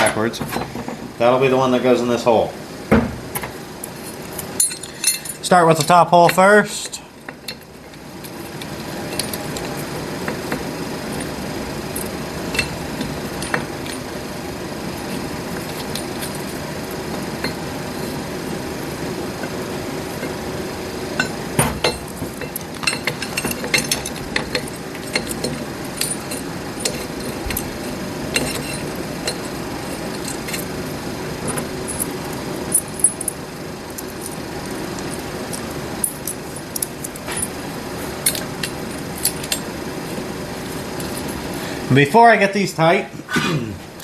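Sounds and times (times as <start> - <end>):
steady low hum: 0.0 - 44.0
metallic clinks of bolts and tools: 4.6 - 6.4, 21.2 - 30.7.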